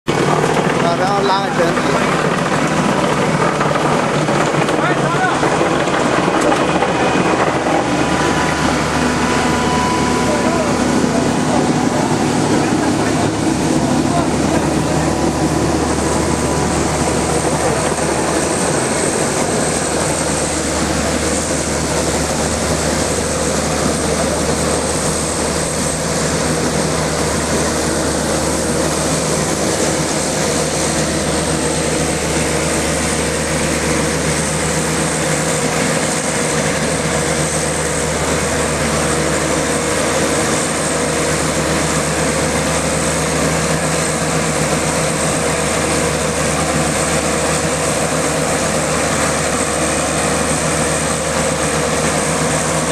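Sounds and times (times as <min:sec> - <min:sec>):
spraying machine droning: 0:00.1 - 0:52.9.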